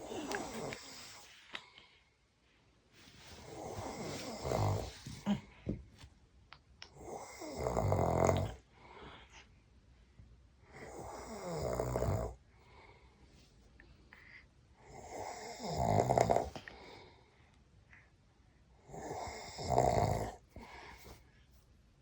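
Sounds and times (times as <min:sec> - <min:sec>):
man snoring: 0:03.5 - 0:05.0, 0:07.0 - 0:08.6, 0:10.9 - 0:12.4, 0:14.9 - 0:16.5, 0:18.9 - 0:20.4.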